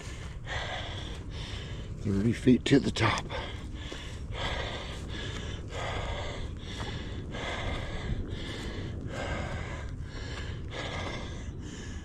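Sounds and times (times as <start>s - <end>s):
man breathing hard: 0.0s - 2.0s, 3.2s - 12.0s.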